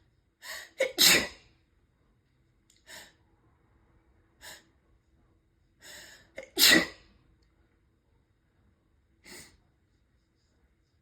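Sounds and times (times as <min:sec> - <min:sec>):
person sneezing: 0:00.8 - 0:01.4, 0:06.4 - 0:07.0.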